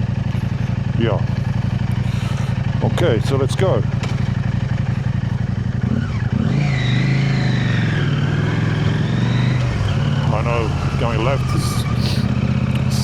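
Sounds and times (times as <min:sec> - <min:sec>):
motorcycle engine revving and pulling away: 0:00.0 - 0:13.0.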